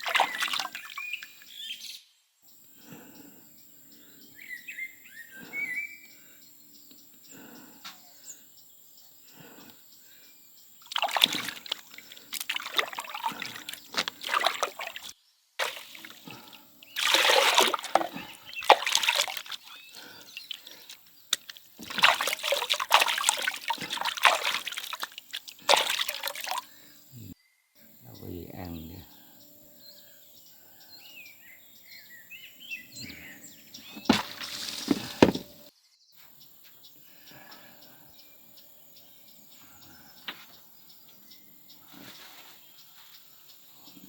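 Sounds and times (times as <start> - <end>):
water splashing and trickling: 0.0 - 1.5, 10.8 - 26.9, 33.9 - 35.7.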